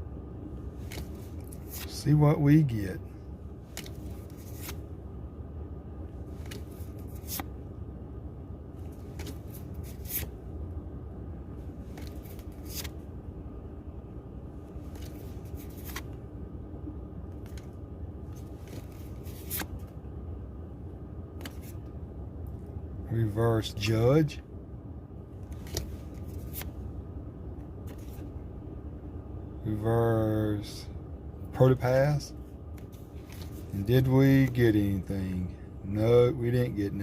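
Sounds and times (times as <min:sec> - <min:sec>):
steady low hum: 0:00.0 - 0:37.0
trading cards snapping: 0:11.9 - 0:12.9.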